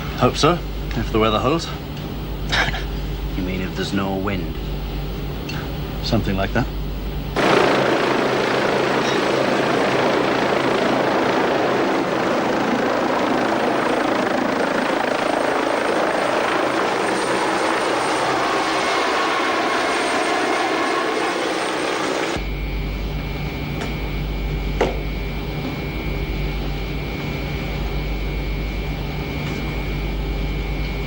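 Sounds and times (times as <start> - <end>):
helicopter engine and rotors: 6.8 - 31.0.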